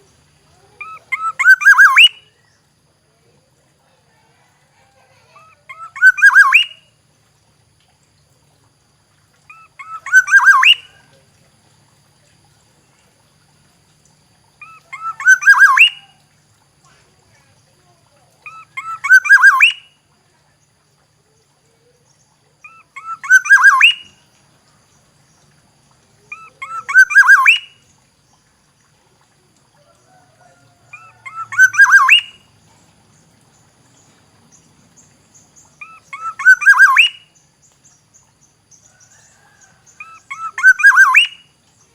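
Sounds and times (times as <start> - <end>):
oriole calling: 0.6 - 2.2, 5.3 - 6.8, 9.5 - 11.1, 14.6 - 16.2, 18.4 - 19.9, 22.6 - 24.1, 26.2 - 27.8, 30.0 - 32.5, 35.8 - 37.2, 39.2 - 41.4.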